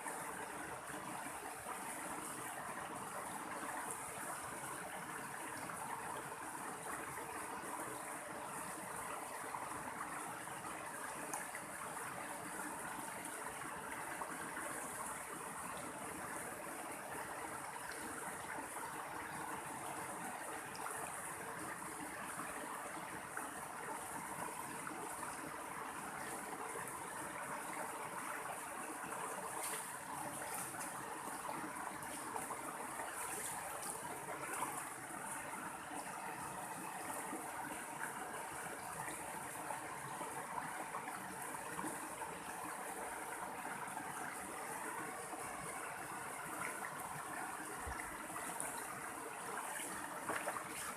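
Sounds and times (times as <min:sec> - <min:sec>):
stream water flowing: 0:00.0 - 0:50.9.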